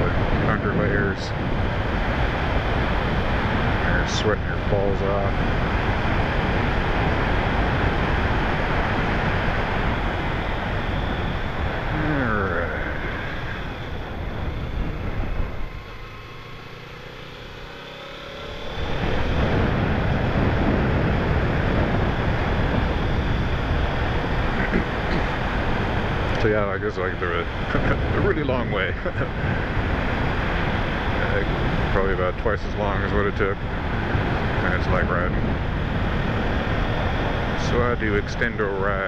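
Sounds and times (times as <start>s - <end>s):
motorcycle engine running: 0.0s - 39.0s
wind rushing over microphone: 0.0s - 39.0s.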